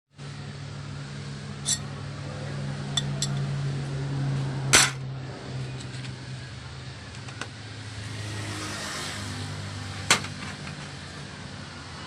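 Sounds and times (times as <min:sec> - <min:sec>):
loud metal clank: 0:04.7 - 0:05.0.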